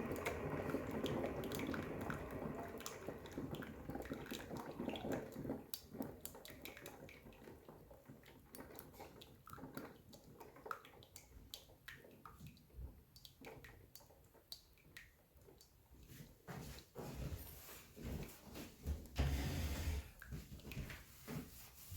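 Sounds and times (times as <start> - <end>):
coffee dripping: 0.0 - 15.9.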